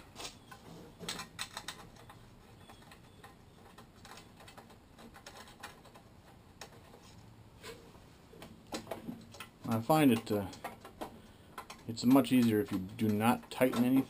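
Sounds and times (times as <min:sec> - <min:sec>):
faint metallic clicks and ticks: 0:08.4 - 0:14.0.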